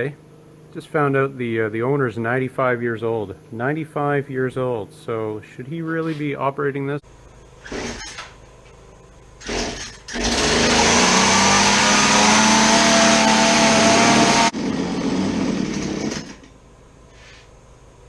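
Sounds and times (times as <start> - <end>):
chainsaw engine running: 9.4 - 16.5.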